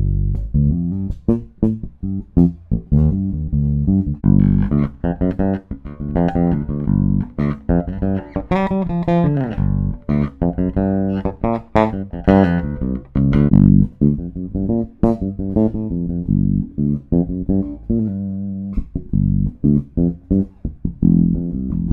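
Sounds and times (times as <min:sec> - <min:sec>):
electric bass plucked fingerstyle: 0:00.0 - 0:21.9.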